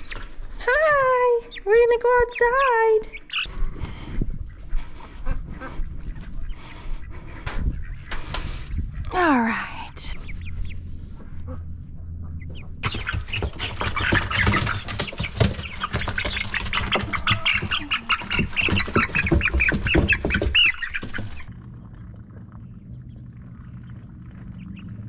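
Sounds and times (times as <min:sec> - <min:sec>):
poultry squawking: 0:01.4 - 0:08.7, 0:10.2 - 0:21.5.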